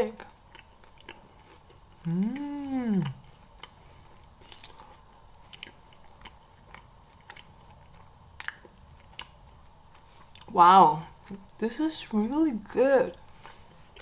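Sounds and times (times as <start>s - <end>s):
soft chewing: 0.1s - 12.3s, 13.1s - 14.0s
person humming mmm: 2.0s - 3.2s.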